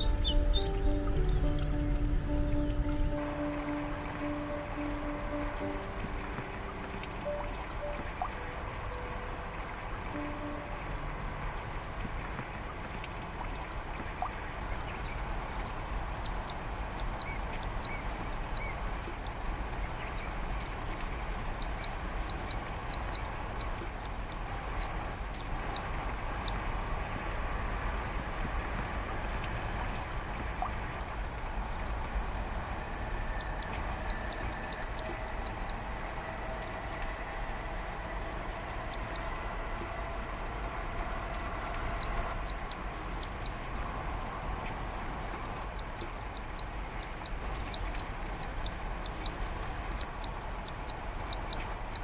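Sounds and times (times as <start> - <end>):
steady rain: 0.0 - 52.0
bird giving clicking calls: 16.1 - 20.3, 21.5 - 26.6, 33.4 - 35.8, 38.9 - 39.3, 41.8 - 43.6, 45.7 - 49.4, 50.0 - 52.0.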